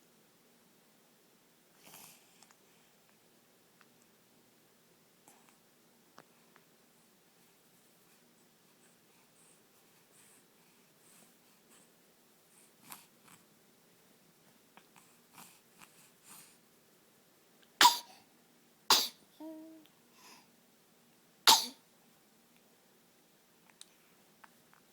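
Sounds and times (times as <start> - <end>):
person sneezing: 17.8 - 18.2, 18.9 - 19.2, 21.5 - 21.8.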